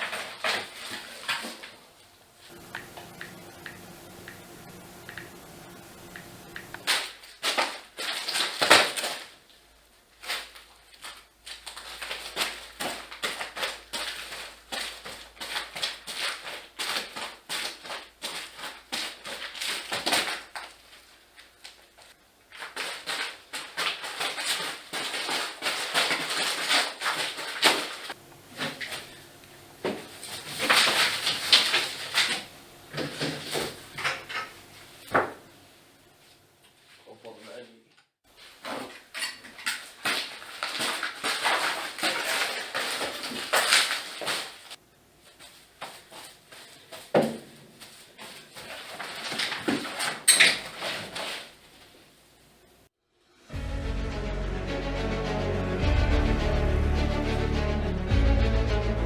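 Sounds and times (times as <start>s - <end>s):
rapid clicks: 2.5s - 6.9s
rustling and scraping: 38.3s - 52.1s.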